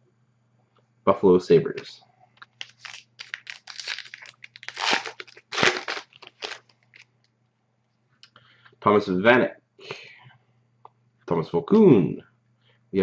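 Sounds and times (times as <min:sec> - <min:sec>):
card pack wrapper tearing: 0:02.4 - 0:07.1.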